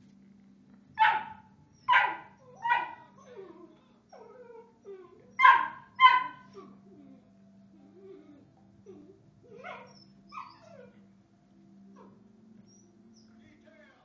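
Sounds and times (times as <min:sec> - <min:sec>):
dogs whining: 0:00.9 - 0:13.4
dogs barking sharply: 0:01.0 - 0:03.1, 0:05.4 - 0:06.5.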